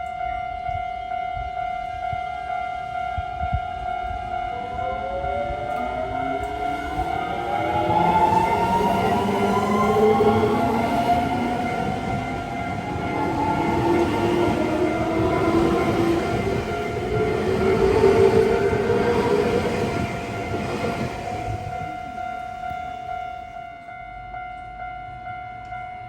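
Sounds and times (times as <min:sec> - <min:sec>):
train wheel and rail noise: 0:00.0 - 0:26.0
electric train motor whine: 0:04.6 - 0:21.9.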